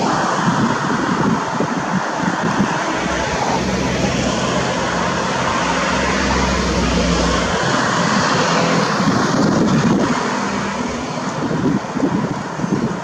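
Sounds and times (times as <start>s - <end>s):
propeller aircraft engine drone: 0.0s - 13.0s.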